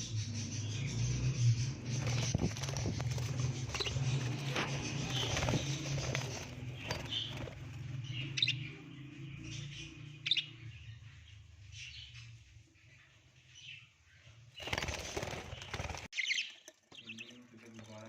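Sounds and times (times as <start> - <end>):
budgerigars chirping: 0.0 - 12.2.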